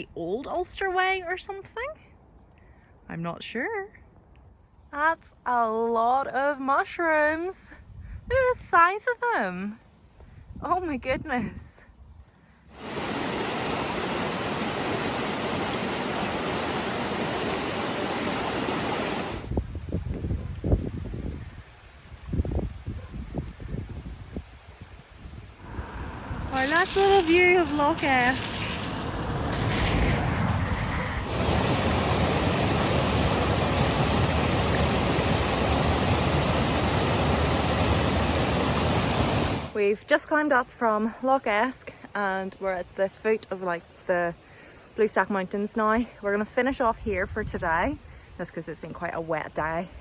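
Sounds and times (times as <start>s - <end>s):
running water: 12.7s - 19.6s, 25.6s - 39.8s.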